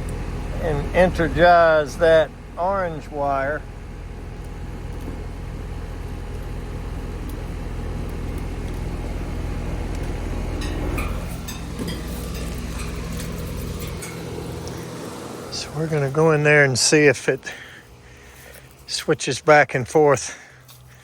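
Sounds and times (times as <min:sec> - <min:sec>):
heat pump humming: 0:00.0 - 0:21.0.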